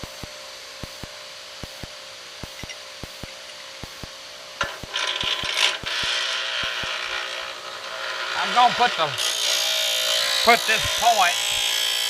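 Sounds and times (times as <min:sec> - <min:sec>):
grinder humming: 0:00.0 - 0:12.0
gritty metal grinding: 0:04.6 - 0:12.0.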